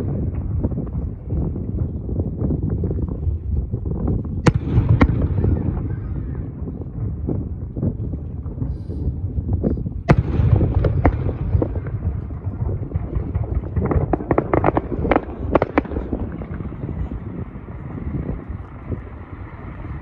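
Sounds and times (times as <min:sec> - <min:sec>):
crackling firework pops: 0:00.0 - 0:06.0, 0:07.8 - 0:19.8
low rumble: 0:00.0 - 0:20.0
firework shells bursting: 0:10.0 - 0:18.8.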